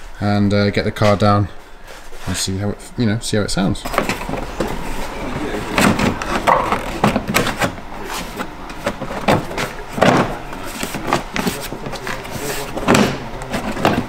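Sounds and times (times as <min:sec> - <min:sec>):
indistinct voices: 0:02.2 - 0:14.0
knocks and clicks of car work: 0:08.6 - 0:10.4.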